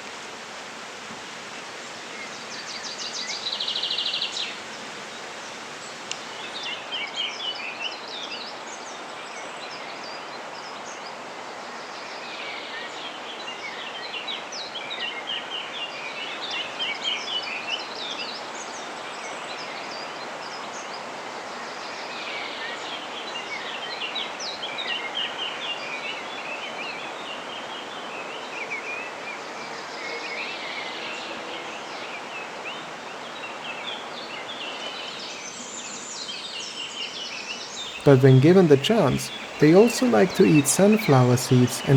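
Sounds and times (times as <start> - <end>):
outdoor background rush: 38.0 - 41.9.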